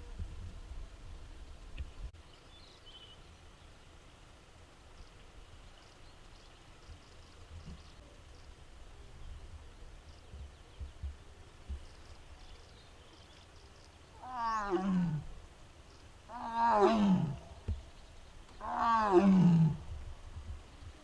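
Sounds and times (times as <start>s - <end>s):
tiger calling: 14.2s - 15.4s, 16.3s - 20.0s.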